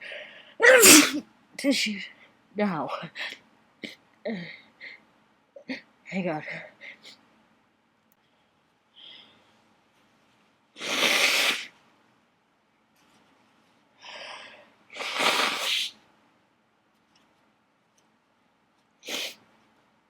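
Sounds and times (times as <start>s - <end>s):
person sneezing: 0.6s - 1.2s.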